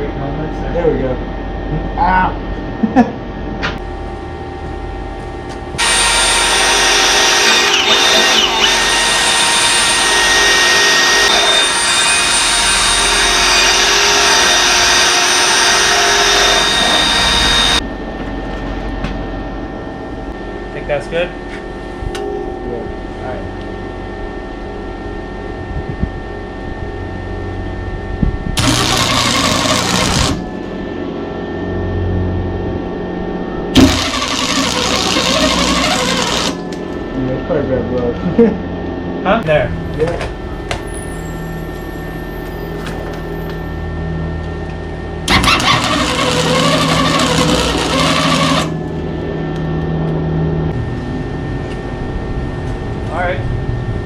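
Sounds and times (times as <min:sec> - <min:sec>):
steady machine hum: 0:00.0 - 0:54.0
welder arc crackling: 0:05.8 - 0:17.8, 0:28.6 - 0:30.7, 0:33.8 - 0:37.0, 0:45.3 - 0:49.0.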